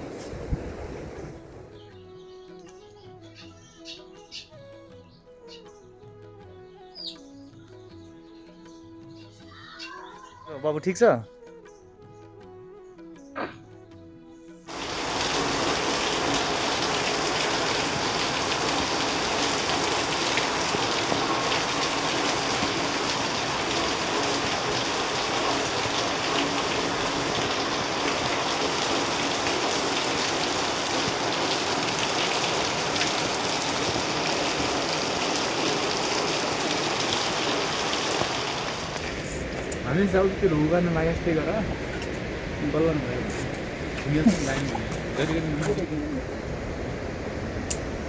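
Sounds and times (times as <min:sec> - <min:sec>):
rushing water: 0:00.0 - 0:01.7, 0:14.7 - 0:48.0.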